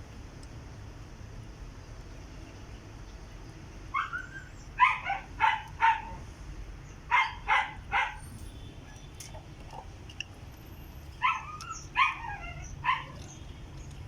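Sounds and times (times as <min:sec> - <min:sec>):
low steady rumble: 0:00.0 - 0:14.0
dog barking: 0:03.9 - 0:06.2, 0:07.1 - 0:08.2, 0:11.2 - 0:13.2.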